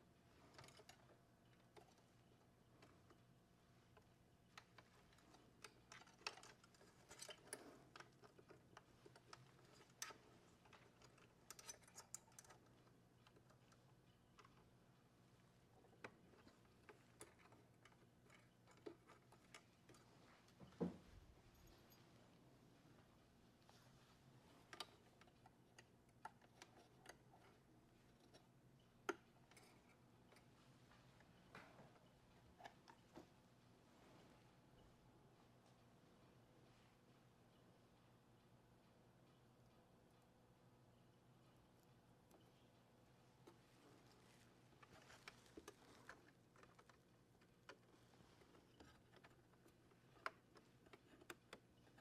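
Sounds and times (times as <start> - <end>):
low steady hum: 0.0 - 52.0
small clicks and taps of hand tools: 0.4 - 14.8, 15.7 - 20.9, 24.6 - 33.4, 43.4 - 52.0.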